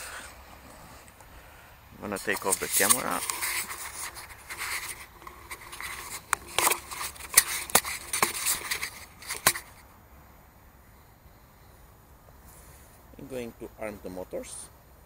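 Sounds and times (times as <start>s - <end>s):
camera handling rustling: 2.3s - 9.8s.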